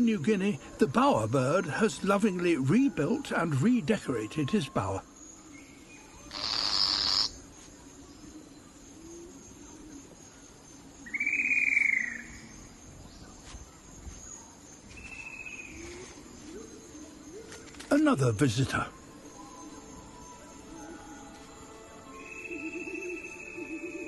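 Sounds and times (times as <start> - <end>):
insect drone: 0.0 - 24.0
bird rasping call: 6.3 - 7.4.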